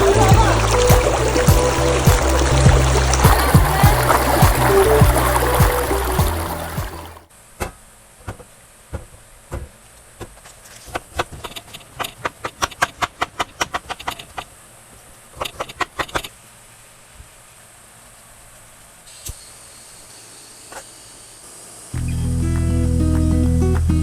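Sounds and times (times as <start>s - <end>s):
sharp taps and clicks: 0.3s - 6.9s.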